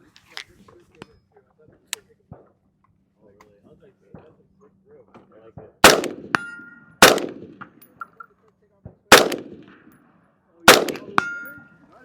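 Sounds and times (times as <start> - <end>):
rifle shots: 5.8 - 7.8, 9.1 - 10.0, 10.7 - 11.7
steel target ringing: 6.2 - 7.0, 11.1 - 11.8.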